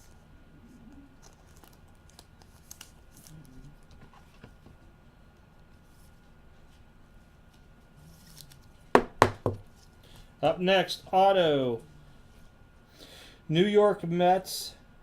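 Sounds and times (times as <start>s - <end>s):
trading cards rustling: 1.2s - 4.0s.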